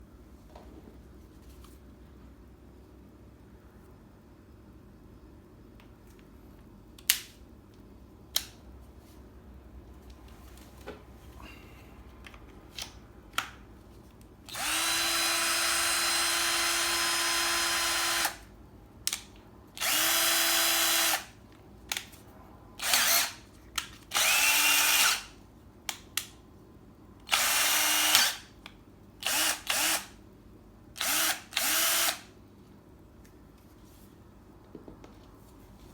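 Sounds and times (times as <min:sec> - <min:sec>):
drill-driver motor running: 0:14.5 - 0:18.4, 0:19.8 - 0:21.3, 0:22.8 - 0:23.4, 0:24.1 - 0:25.3, 0:27.3 - 0:28.4, 0:29.2 - 0:30.1, 0:31.0 - 0:32.3.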